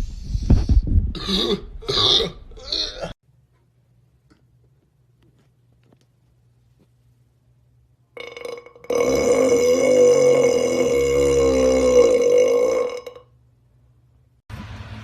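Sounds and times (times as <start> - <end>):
person burping loudly: 1.2 - 3.2, 8.2 - 13.3.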